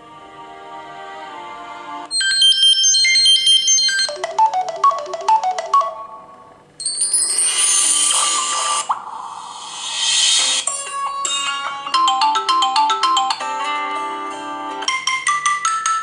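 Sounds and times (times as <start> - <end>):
tablet ringtone melody: 2.1 - 8.8, 10.0 - 16.0.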